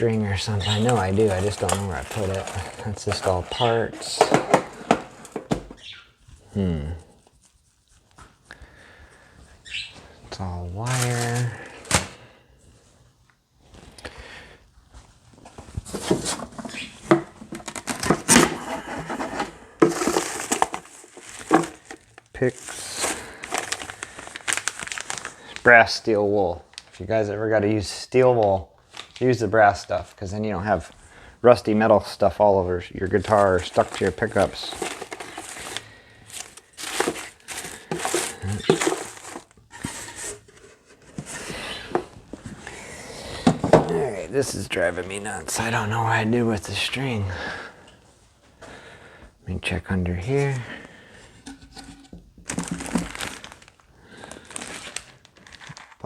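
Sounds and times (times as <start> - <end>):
hands rummaging through small parts: 0.0 - 5.9, 15.9 - 25.6, 33.1 - 42.6, 51.4 - 56.0
packets crinkling: 0.0 - 6.0, 10.8 - 12.2, 15.8 - 25.7, 33.0 - 45.7, 50.6 - 56.0.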